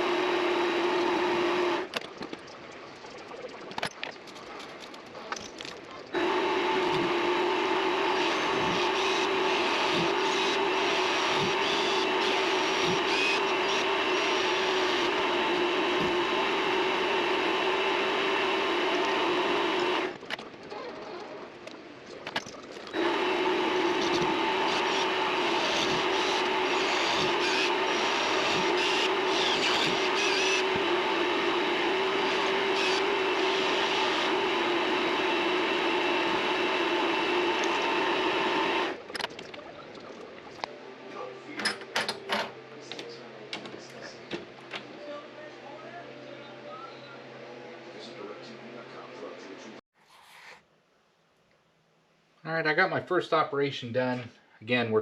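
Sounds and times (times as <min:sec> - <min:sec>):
lathe motor whine: 0:00.0 - 0:01.9, 0:06.2 - 0:20.2, 0:23.0 - 0:39.0.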